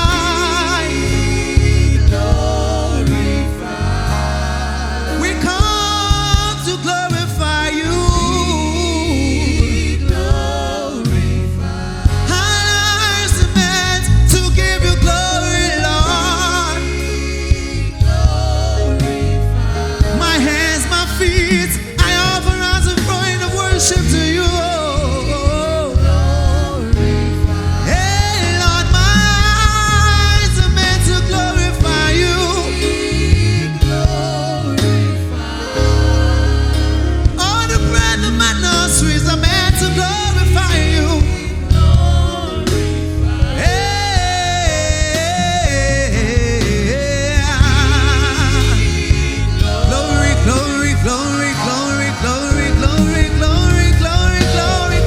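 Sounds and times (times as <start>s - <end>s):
gospel singing with vibrato: 0.0s - 55.0s
instrumental backing with heavy bass: 0.0s - 55.0s.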